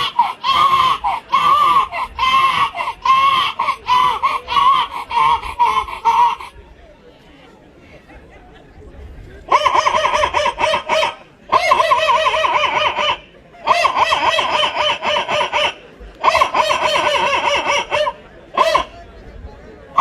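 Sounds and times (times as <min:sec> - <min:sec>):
child imitating chicken cackling: 0:00.0 - 0:06.5.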